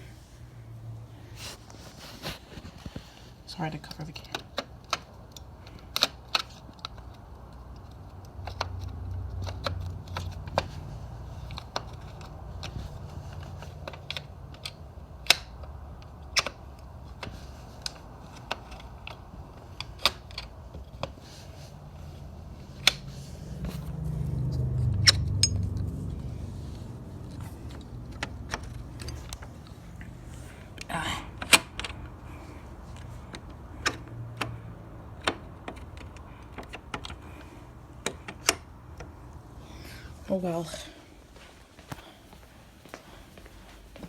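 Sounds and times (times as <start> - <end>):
low rumble: 22.3 - 33.2.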